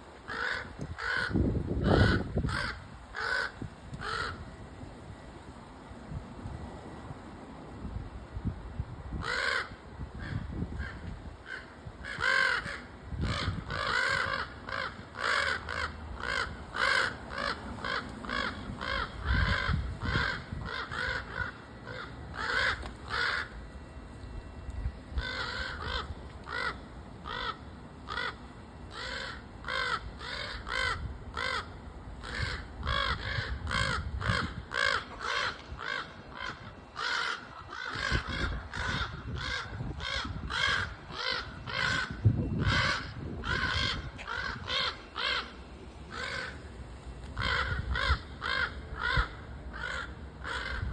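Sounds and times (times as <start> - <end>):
crows cawing: 0.3 - 4.6, 9.1 - 24.4, 25.1 - 50.9.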